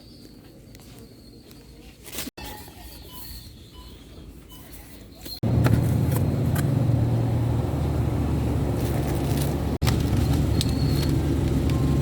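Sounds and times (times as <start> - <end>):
supermarket background hum: 0.0 - 12.0.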